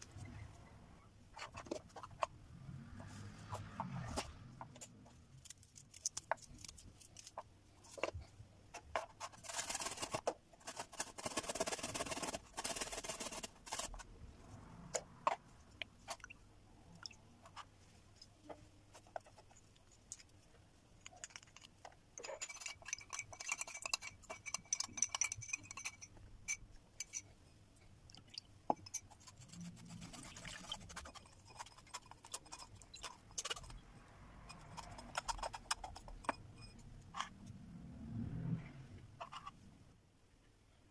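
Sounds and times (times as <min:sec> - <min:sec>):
utensils clicking and knocking: 0:21.0 - 0:27.3.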